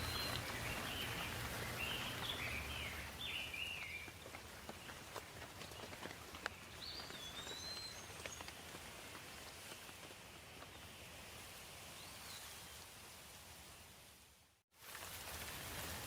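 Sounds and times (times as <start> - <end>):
bird call: 0.0 - 4.1
light rain with drips: 0.0 - 16.0.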